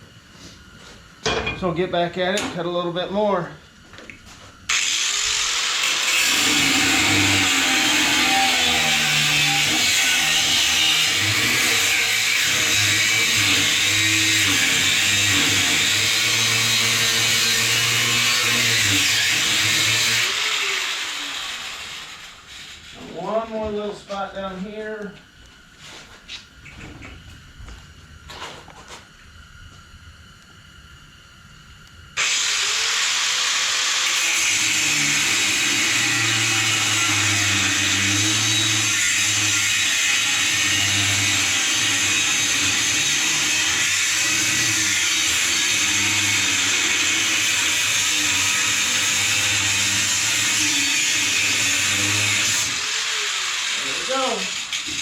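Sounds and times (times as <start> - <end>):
angle grinder cutting steel: 4.7 - 23.6, 32.2 - 55.0.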